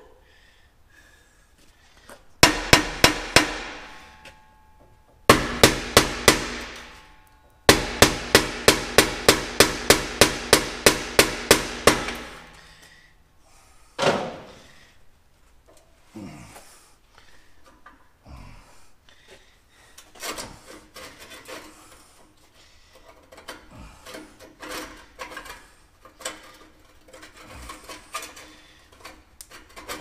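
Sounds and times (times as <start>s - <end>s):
hammer striking metal pipe: 2.4s - 12.7s.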